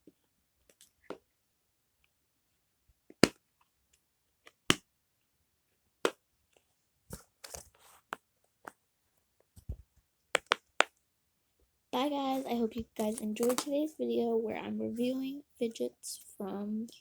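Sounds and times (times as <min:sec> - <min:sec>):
fidget toy pops: 0:03.2 - 0:03.4, 0:10.3 - 0:10.9.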